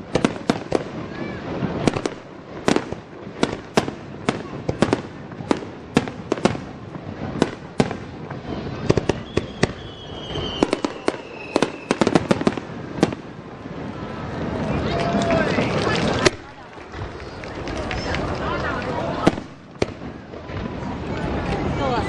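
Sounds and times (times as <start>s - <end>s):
fireworks cracking: 0.0s - 22.0s
faint high whistle: 8.4s - 12.0s.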